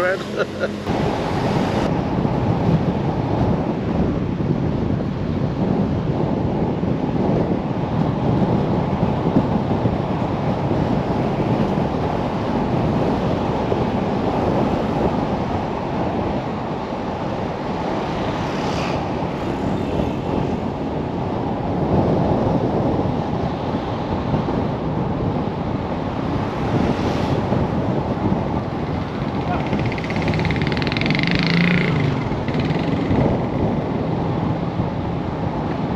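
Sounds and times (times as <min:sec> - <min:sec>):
wind buffeting microphone: 0:00.0 - 0:35.9.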